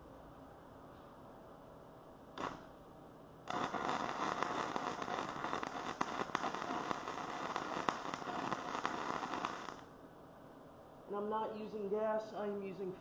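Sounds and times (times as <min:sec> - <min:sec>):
welding arc crackling: 0:02.4 - 0:02.7, 0:03.5 - 0:09.9.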